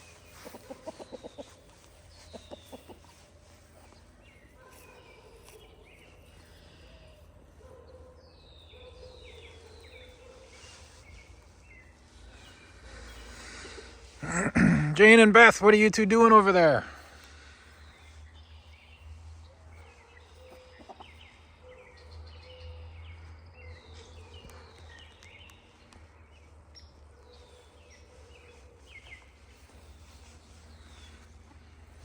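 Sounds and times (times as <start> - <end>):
bird chirps and peeps: 0.0 - 14.1.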